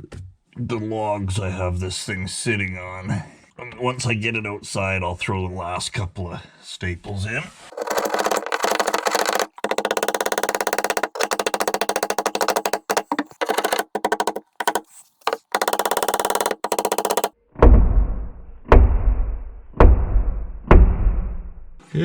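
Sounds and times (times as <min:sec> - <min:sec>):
fast mechanical rattle: 0:07.7 - 0:17.3.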